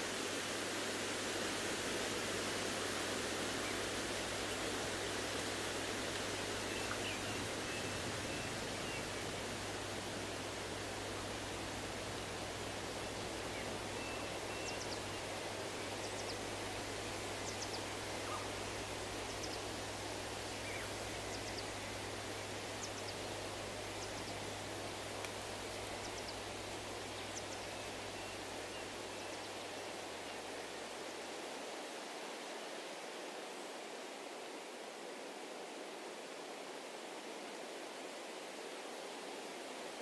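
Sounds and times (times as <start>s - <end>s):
breeze rustling trees: 0.0s - 31.6s
small birds chirping: 3.6s - 29.5s.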